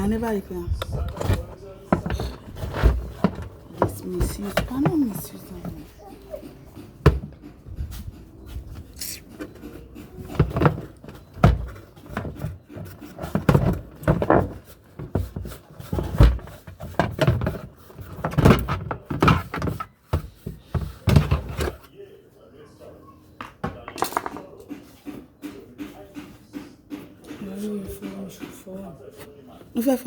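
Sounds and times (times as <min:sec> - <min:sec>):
knocks and thumps on washing machine: 0:00.0 - 0:05.9, 0:07.0 - 0:07.7.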